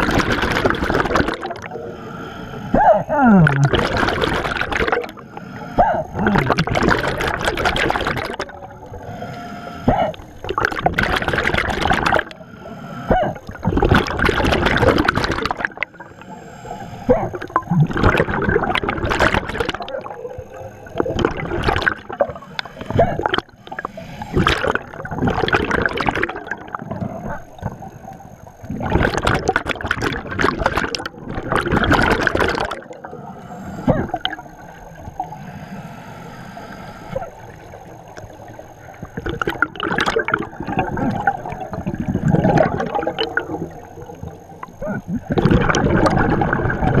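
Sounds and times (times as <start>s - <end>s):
diver exhaling bubbles underwater: 0.0s - 47.0s
diver hiccups: 2.7s - 3.7s, 9.9s - 10.2s, 13.1s - 13.5s.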